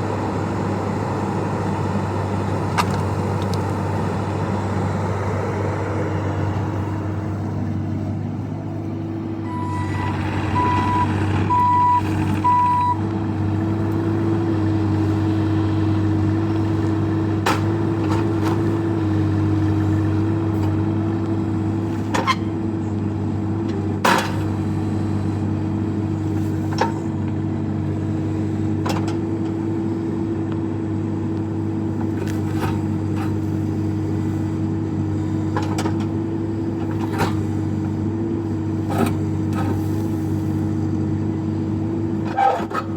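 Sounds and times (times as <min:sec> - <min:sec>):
excavator diesel engine running: 0:00.0 - 0:42.9
travel alarm beeping: 0:09.4 - 0:13.0.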